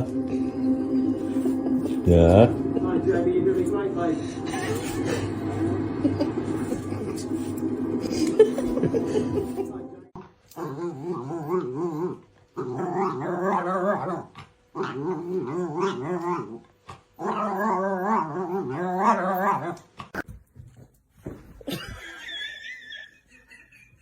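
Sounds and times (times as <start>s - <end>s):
dog growling: 10.2s - 20.2s.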